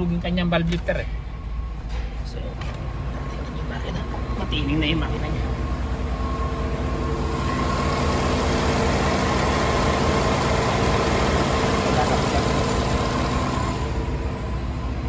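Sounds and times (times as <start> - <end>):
car engine idling: 0.0 - 15.0.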